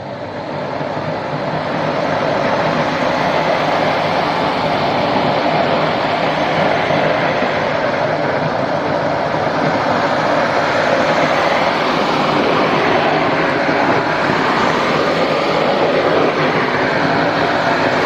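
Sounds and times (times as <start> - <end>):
vacuum cleaner running: 0.0 - 18.0.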